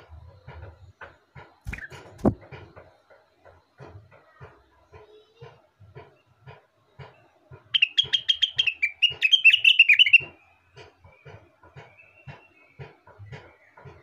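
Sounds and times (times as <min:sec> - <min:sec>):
bird singing rapid high chirps: 0:07.8 - 0:10.3.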